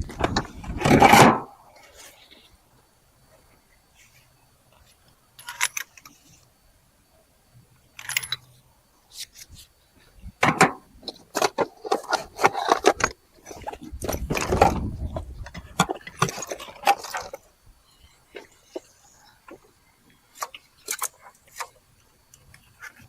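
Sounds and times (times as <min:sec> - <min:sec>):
metal tools clinking: 0:05.4 - 0:06.2, 0:08.0 - 0:08.6.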